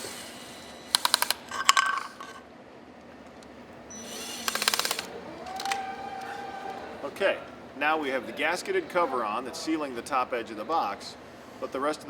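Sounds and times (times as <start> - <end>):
ratcheting screwdriver clicking: 0.9 - 2.3, 3.3 - 5.8.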